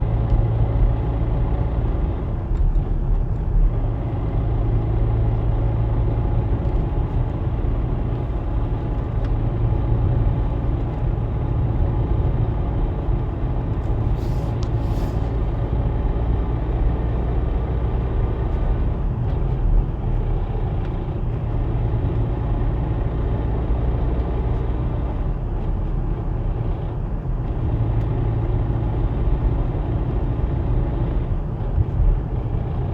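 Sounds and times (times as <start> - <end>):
car engine and drivetrain noise: 0.0 - 32.9.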